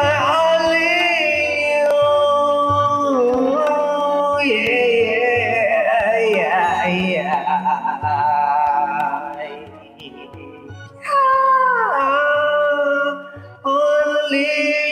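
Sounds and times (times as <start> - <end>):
karaoke backing track with drums: 0.0 - 11.5
man singing with vibrato: 0.0 - 14.9.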